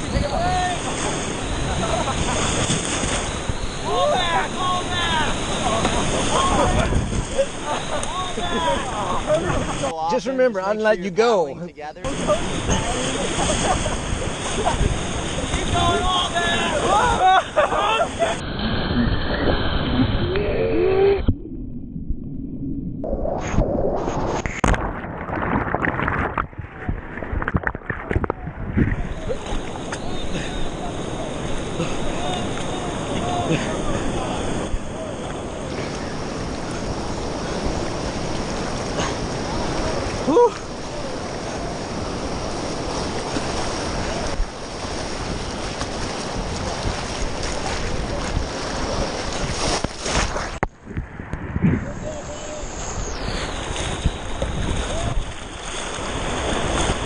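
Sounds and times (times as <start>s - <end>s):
whitewater rushing and splashing: 0.0s - 11.4s, 12.0s - 21.2s, 23.5s - 50.6s, 52.2s - 57.0s
river rapid roaring: 29.1s - 50.6s.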